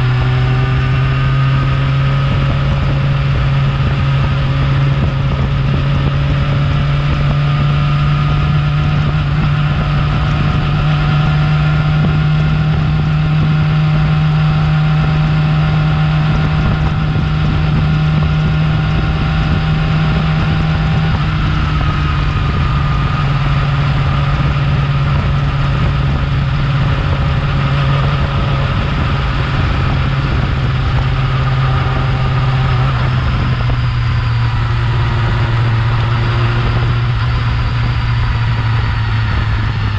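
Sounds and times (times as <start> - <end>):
motorcycle engine running steadily: 0.0 - 39.9.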